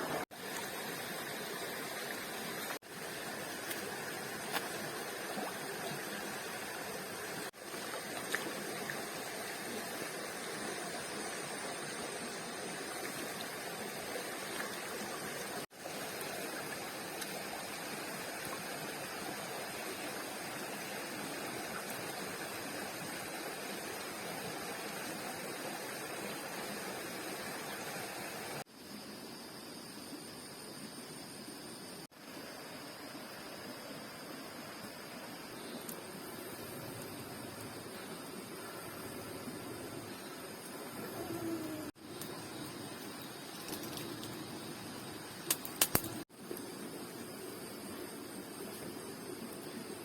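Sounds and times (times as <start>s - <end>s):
water rushing: 0.0s - 28.7s.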